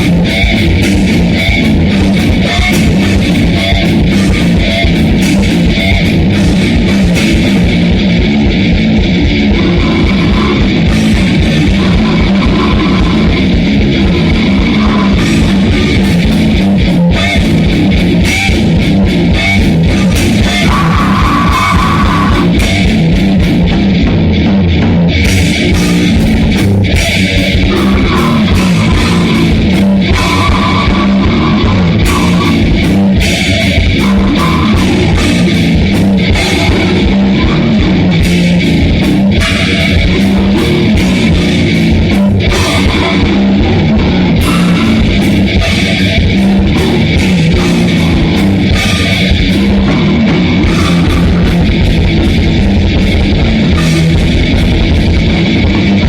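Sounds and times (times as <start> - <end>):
drum kit with cymbals: 0.0 - 8.4, 9.3 - 23.8, 25.2 - 37.6, 38.2 - 43.4, 44.4 - 56.0
electric guitar: 0.0 - 56.0.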